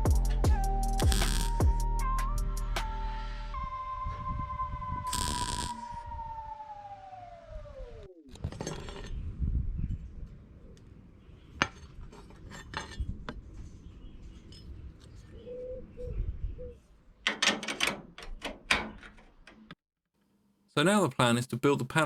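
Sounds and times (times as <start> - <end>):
pitched tone sliding down: 3.6 - 8.3.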